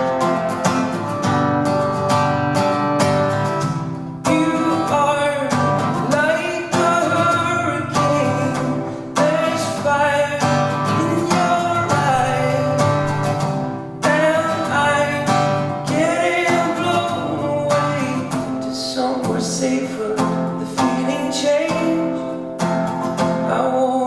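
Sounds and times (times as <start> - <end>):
strummed acoustic guitar: 0.0 - 24.0
pitch-bending lead melody: 10.4 - 15.8.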